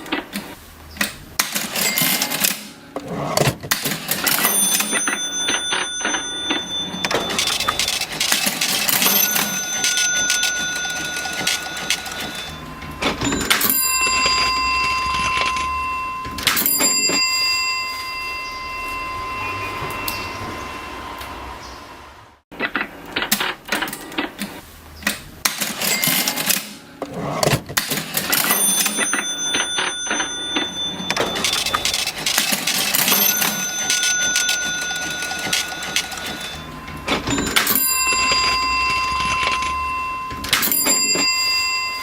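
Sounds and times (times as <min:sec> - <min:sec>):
cash register keys clattering: 0:01.4 - 0:18.4, 0:25.4 - 0:42.0
cash register bell ringing: 0:01.4 - 0:21.7, 0:25.5 - 0:42.0.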